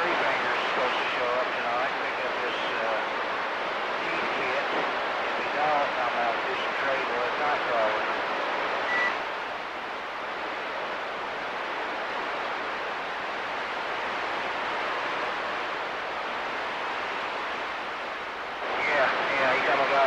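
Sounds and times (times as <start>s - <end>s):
radio static hiss: 0.0s - 20.0s
short high beep: 8.9s - 9.2s.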